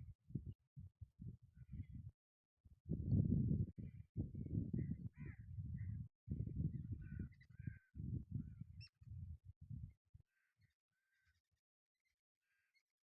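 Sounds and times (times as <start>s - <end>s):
choppy low rumble: 2.9s - 10.0s.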